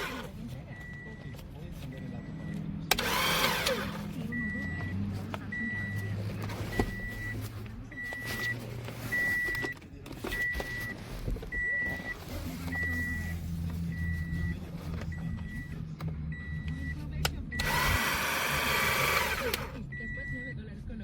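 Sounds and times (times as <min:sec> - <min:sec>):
low motor hum: 0:11.0 - 0:20.2.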